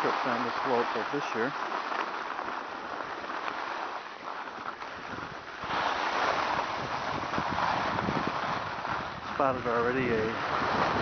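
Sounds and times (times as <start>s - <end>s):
skis hissing on snow: 0.0s - 11.0s
wind on microphone: 2.8s - 11.0s.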